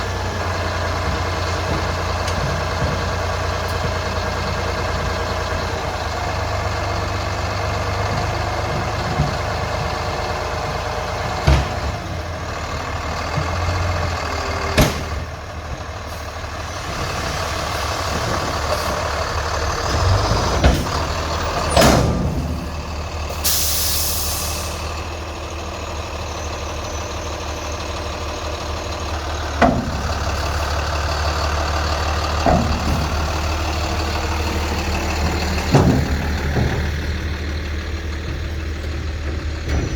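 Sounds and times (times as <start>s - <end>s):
vehicle engine idling: 0.0s - 39.9s
knocks and clanks: 10.8s - 12.4s, 14.6s - 15.9s, 16.8s - 23.4s, 28.9s - 39.9s
air hissing: 23.3s - 24.9s.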